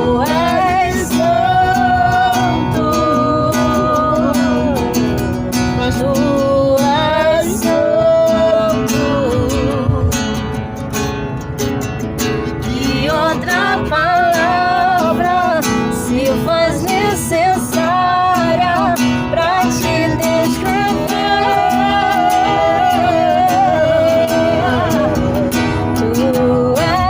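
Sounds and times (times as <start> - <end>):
person singing: 0.0 - 10.1, 12.6 - 27.0
strummed acoustic guitar: 0.0 - 27.0.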